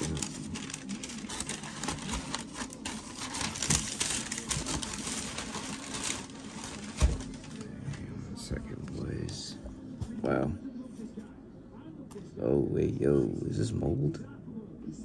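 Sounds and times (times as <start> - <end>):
paper packing crinkling: 0.0 - 8.0.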